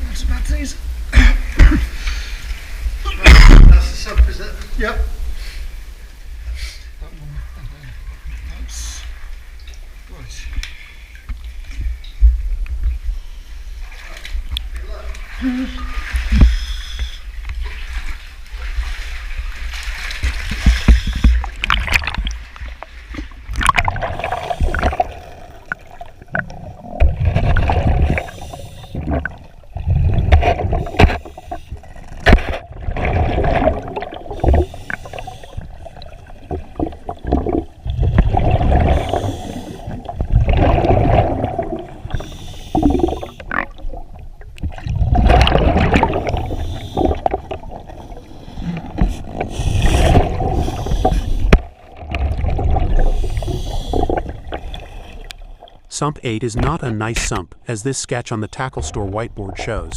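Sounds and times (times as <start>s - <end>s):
water splashing and gurgling: 11.4s - 57.4s, 58.4s - 59.9s
bubbling surges: 31.7s - 55.8s.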